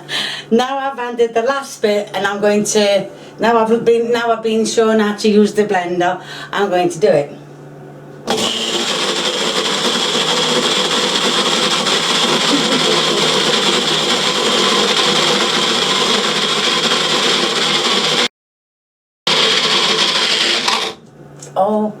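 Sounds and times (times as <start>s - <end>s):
electric blender running: 8.3s - 18.3s, 19.3s - 21.1s.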